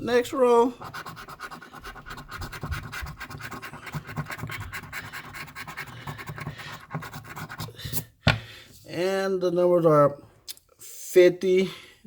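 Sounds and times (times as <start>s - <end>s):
coin scratching lottery ticket: 0.8s - 7.8s.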